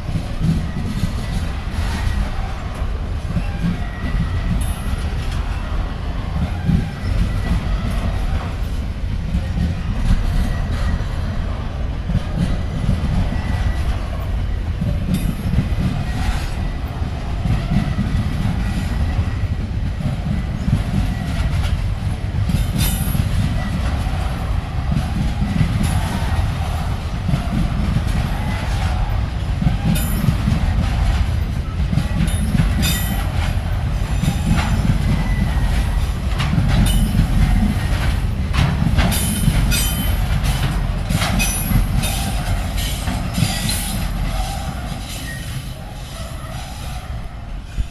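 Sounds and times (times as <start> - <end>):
train wagons rumbling past: 0.0 - 47.9
wheels clicking over rail joints: 17.5 - 46.6.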